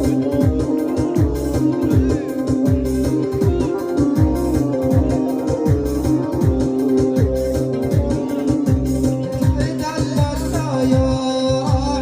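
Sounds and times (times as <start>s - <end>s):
electronic band music: 0.0s - 12.0s.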